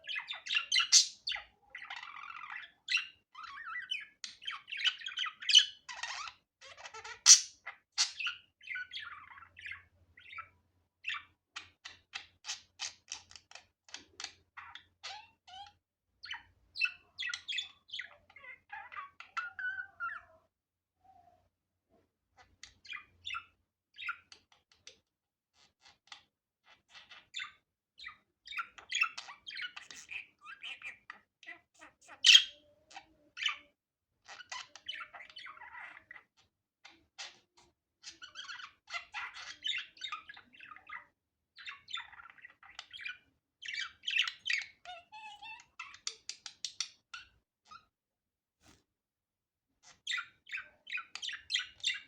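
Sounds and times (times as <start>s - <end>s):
budgerigar quick chirps: 0.7s - 1.2s.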